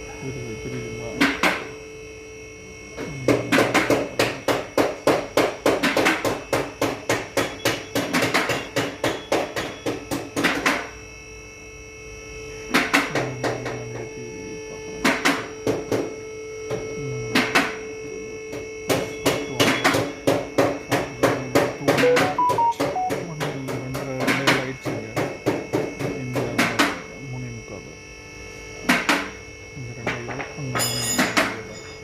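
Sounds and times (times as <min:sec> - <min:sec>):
workshop hum: 0:00.0 - 0:32.0
hammer striking metal: 0:18.9 - 0:23.2.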